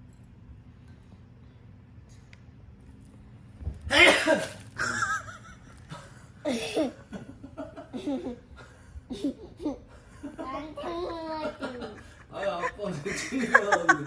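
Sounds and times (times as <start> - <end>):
man sneezing loudly: 3.9 - 4.6.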